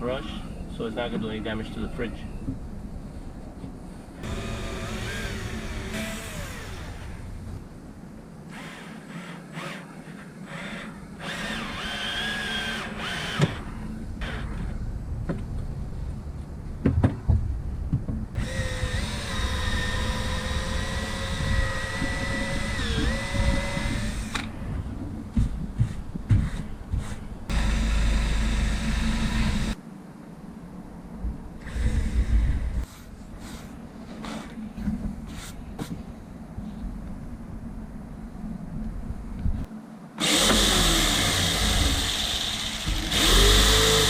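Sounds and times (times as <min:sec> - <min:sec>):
power drill running: 0:04.2 - 0:07.4, 0:10.5 - 0:13.7, 0:18.4 - 0:24.4, 0:27.5 - 0:29.8, 0:40.2 - 0:44.0.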